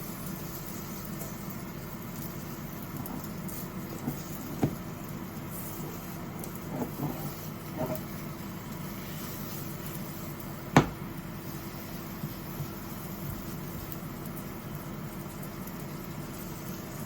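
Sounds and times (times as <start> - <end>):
steady hum: 10.2 - 13.7.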